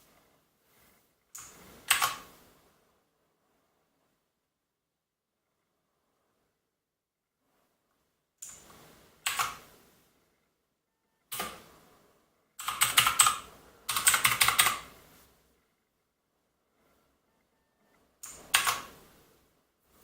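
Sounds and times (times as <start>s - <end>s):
mechanical keyboard clicking: 9.3s - 9.6s, 12.6s - 14.8s, 18.2s - 18.9s.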